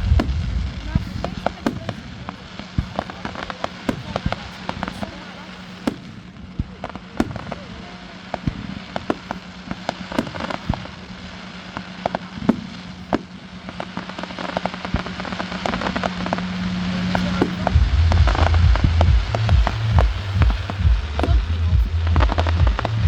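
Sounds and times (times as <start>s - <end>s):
low hum: 0.0s - 1.3s, 16.5s - 23.0s
fireworks bangs and crackles: 0.0s - 23.0s.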